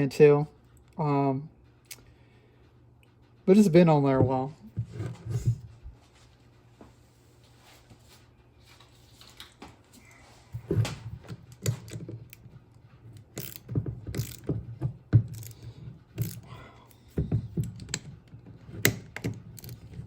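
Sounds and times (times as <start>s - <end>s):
socket ratchet clicking: 13.2s - 14.6s, 15.2s - 16.5s, 18.8s - 20.0s.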